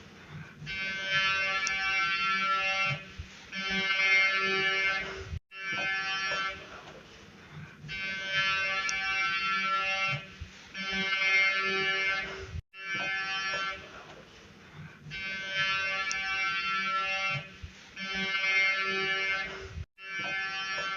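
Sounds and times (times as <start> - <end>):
buzzing alarm blasts: 0.3 - 6.9, 7.7 - 14.2, 15.0 - 20.9.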